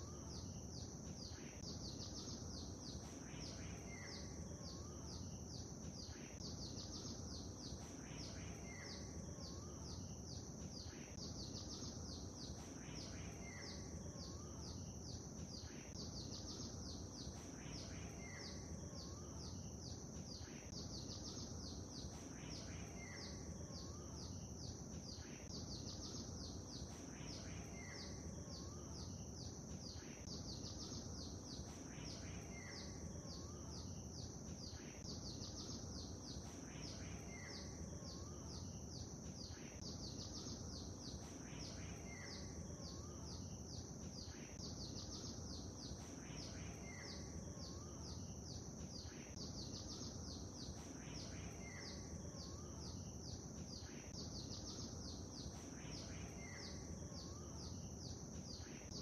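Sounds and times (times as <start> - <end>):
songbirds chirping: 0.0 - 59.0.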